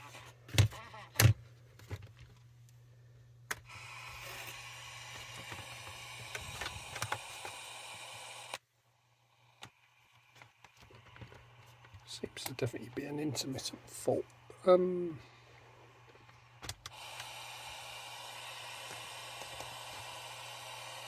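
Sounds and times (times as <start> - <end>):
radio static hiss: 10.9 - 15.3.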